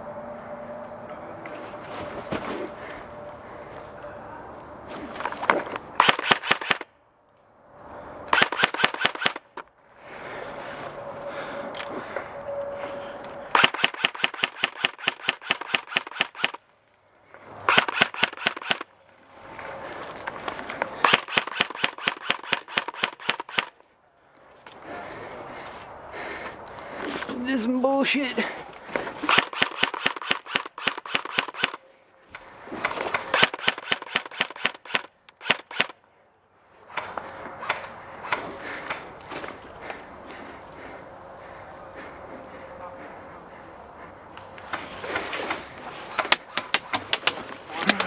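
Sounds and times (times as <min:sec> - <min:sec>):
airsoft gun firing full-auto: 0:06.0 - 0:06.9, 0:08.3 - 0:09.5, 0:13.5 - 0:16.6, 0:17.7 - 0:18.8, 0:21.0 - 0:23.7, 0:29.3 - 0:31.8, 0:33.3 - 0:35.9.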